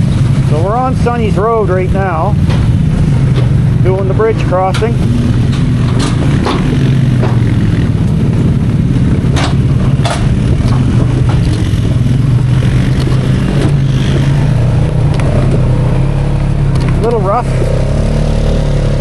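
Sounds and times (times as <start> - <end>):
atv engine running: 0.0 - 19.0
sharp rattling knocks: 2.4 - 3.8, 4.5 - 15.8.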